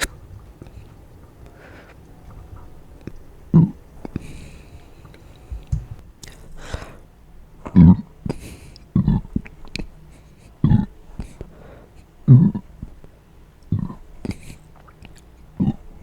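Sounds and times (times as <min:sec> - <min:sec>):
breathing: 0:00.6 - 0:02.1, 0:04.0 - 0:05.7, 0:06.4 - 0:07.1, 0:08.3 - 0:08.9, 0:10.1 - 0:12.1, 0:14.2 - 0:14.8
low closed-mouth burps: 0:03.5 - 0:03.8, 0:07.6 - 0:09.9, 0:10.6 - 0:11.0, 0:12.2 - 0:12.9, 0:13.7 - 0:14.6, 0:15.6 - 0:16.0.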